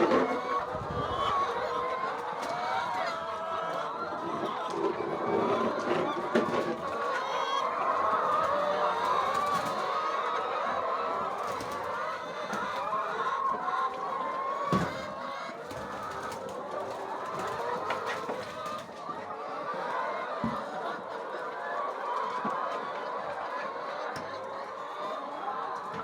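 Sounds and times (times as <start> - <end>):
chickens clucking: 0.0 - 26.0.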